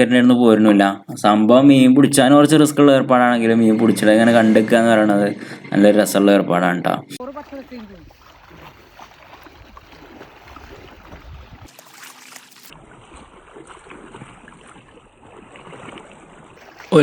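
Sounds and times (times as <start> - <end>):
river water running: 3.1 - 17.0.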